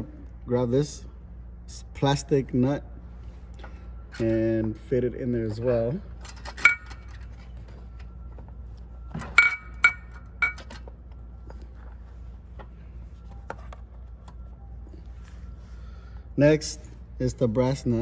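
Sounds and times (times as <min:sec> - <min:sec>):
steady low hum: 0:00.0 - 0:18.0
small metal parts clinking: 0:06.2 - 0:07.5.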